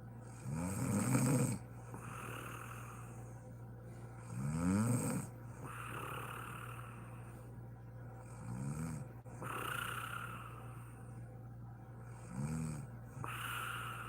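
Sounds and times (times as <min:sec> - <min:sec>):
quiet breathing: 0:00.0 - 0:14.0
steady low hum: 0:00.0 - 0:14.0
woman snoring: 0:00.2 - 0:03.3, 0:04.2 - 0:07.3, 0:08.2 - 0:10.9, 0:12.1 - 0:14.0.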